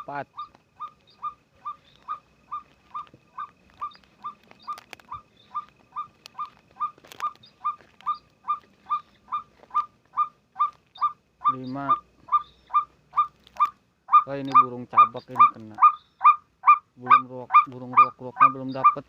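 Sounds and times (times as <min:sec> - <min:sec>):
bird call repeated note: 0:14.1 - 0:19.0.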